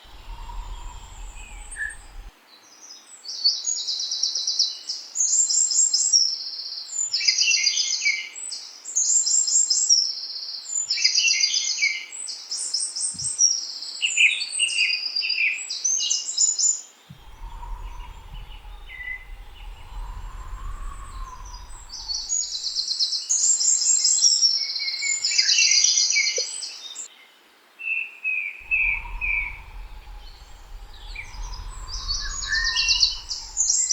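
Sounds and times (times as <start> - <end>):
low chirps: 0.0 - 2.3, 17.1 - 22.8, 28.6 - 33.9
low rumble: 0.0 - 2.3, 17.1 - 22.8, 28.6 - 33.9
songbirds trilling: 0.0 - 2.3, 17.1 - 22.9, 28.6 - 33.9.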